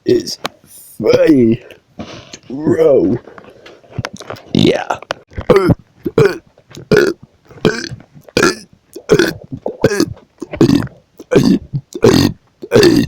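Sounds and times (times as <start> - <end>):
person belching: 4.5 - 13.0.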